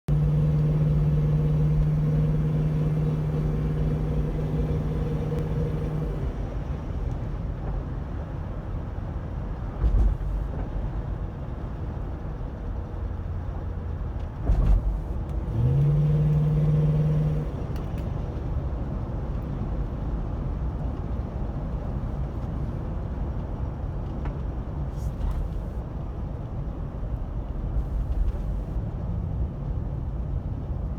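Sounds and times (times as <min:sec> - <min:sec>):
car engine revving and idling: 0:00.0 - 0:06.7, 0:13.5 - 0:18.2, 0:27.8 - 0:28.8.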